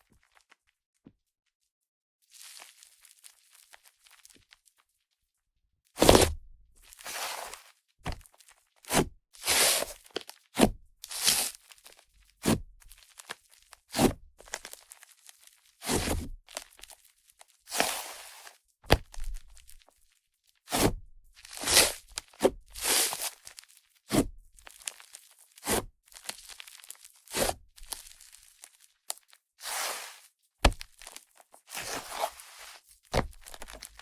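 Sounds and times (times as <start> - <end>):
hands squishing slime: 29.7 - 34.0.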